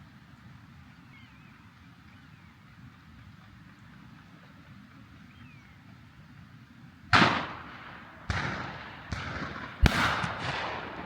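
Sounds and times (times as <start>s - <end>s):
outdoor background: 0.0s - 11.0s
shotgun shots echoing: 7.1s - 11.0s.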